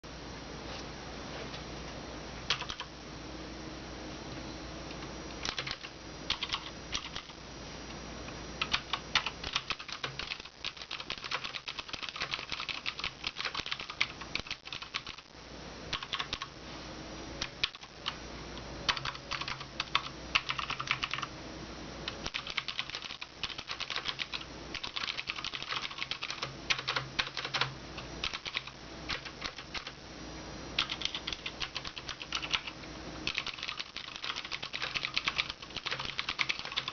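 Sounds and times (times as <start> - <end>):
mechanical keyboard typing clicks: 2.5 - 2.9, 5.4 - 7.3, 8.6 - 15.2, 15.9 - 16.5, 17.5 - 17.9, 18.9 - 21.3, 22.2 - 29.9, 30.8 - 32.7, 33.3 - 36.9.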